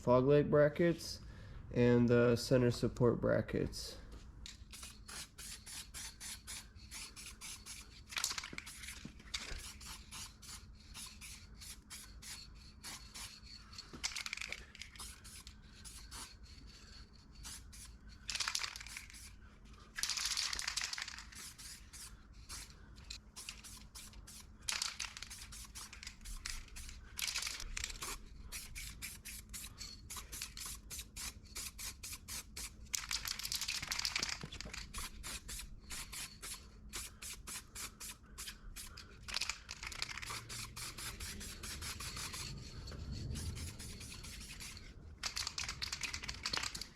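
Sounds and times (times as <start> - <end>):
aerosol spray paint hissing: 4.7 - 8.0, 8.6 - 13.5, 14.2 - 16.4, 17.4 - 19.4, 21.2 - 22.7, 23.3 - 27.0, 27.9 - 32.8, 34.9 - 39.0, 39.8 - 42.5, 43.4 - 44.9.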